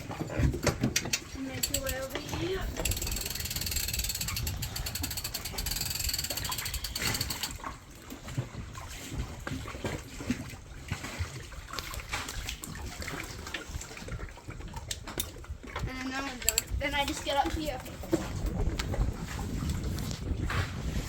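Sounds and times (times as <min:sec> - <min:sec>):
anchor windlass chain clicking: 0:00.0 - 0:08.5, 0:14.7 - 0:19.1
water trickling and splashing: 0:00.0 - 0:21.0.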